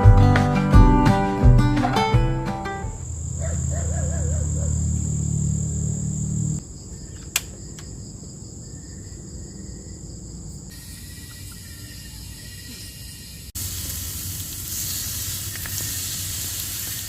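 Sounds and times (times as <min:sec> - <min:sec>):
background music: 0:00.0 - 0:03.0
crickets chirring: 0:02.7 - 0:17.0
sharp click: 0:07.2 - 0:07.9.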